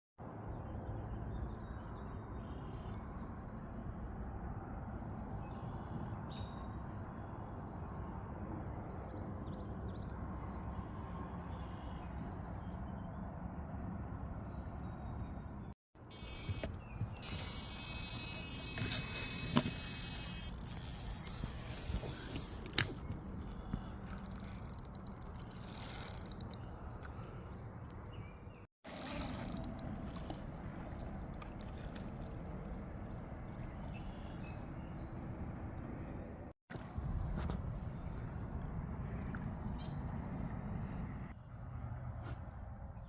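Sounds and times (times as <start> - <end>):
fishing reel ratchet buzzing: 16.0 - 22.9, 24.1 - 26.6, 28.9 - 29.8.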